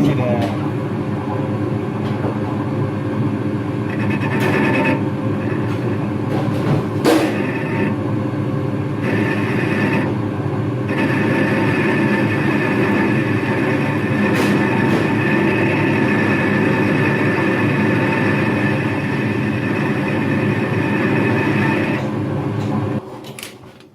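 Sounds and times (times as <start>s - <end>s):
workshop machine running: 0.0s - 23.9s
high squealing tone: 3.8s - 6.1s, 7.1s - 8.0s, 9.0s - 10.2s, 10.8s - 22.1s.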